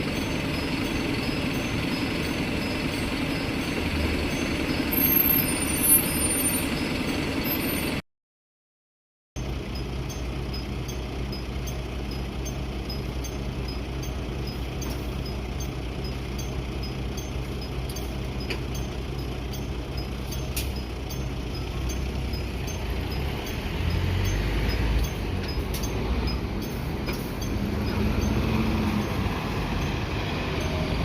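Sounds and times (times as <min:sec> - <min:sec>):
bus engine running: 0:00.0 - 0:08.0, 0:09.4 - 0:31.0
turn indicator chime: 0:09.4 - 0:31.0.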